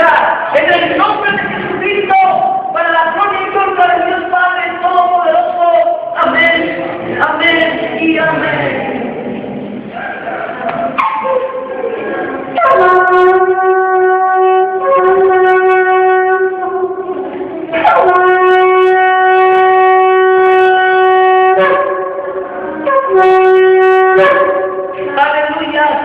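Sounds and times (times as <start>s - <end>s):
shofar blasts: 12.6s - 25.0s.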